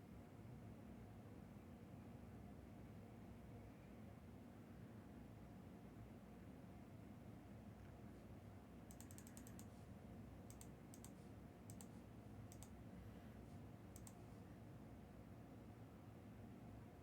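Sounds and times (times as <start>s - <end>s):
low room hum: 0.0s - 17.0s
computer keyboard typing: 8.9s - 9.7s, 10.5s - 12.8s, 13.9s - 14.2s.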